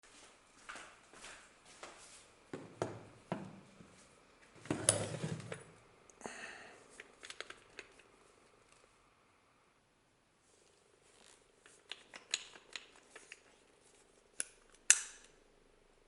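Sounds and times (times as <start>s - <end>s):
metal parts clicking and knocking: 11.7s - 13.5s.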